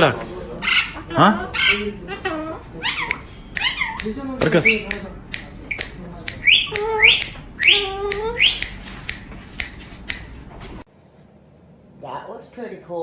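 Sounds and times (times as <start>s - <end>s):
parrot calling: 0.5s - 10.4s
finger snaps: 3.1s - 10.4s.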